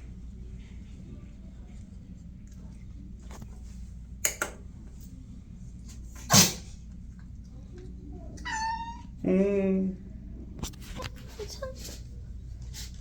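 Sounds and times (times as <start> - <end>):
cat sneezing: 6.2 - 6.8.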